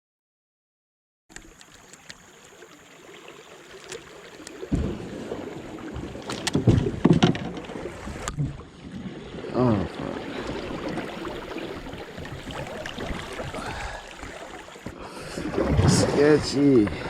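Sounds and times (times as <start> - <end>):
water rushing around kayak: 1.3 - 17.0
low knocks and bumps: 4.7 - 8.6.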